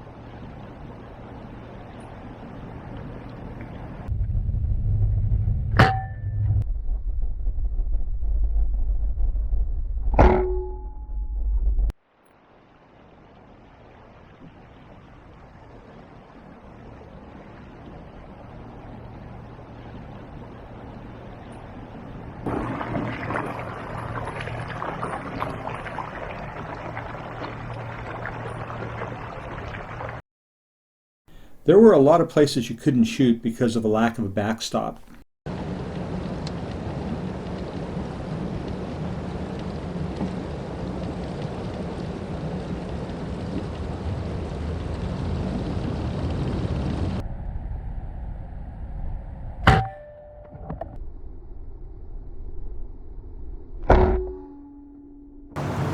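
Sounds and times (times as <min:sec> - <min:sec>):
water slapping against hull: 0:22.4 - 0:30.2, 0:55.6 - 0:55.9
outboard motor running: 0:55.6 - 0:55.9.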